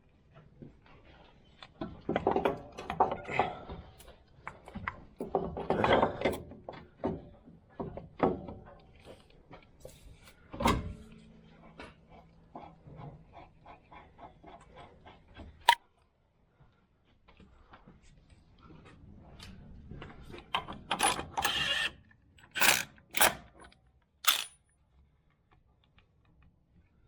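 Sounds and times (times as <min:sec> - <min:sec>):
ratchet clicking: 0:22.6 - 0:23.4, 0:24.2 - 0:24.6
hand tools clanking on steel: 0:24.3 - 0:24.5.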